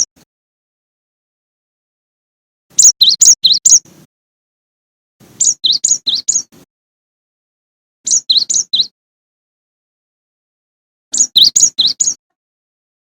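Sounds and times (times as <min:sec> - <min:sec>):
bird whistling song: 0:02.7 - 0:03.9, 0:05.3 - 0:06.6, 0:08.1 - 0:09.0, 0:11.1 - 0:12.2.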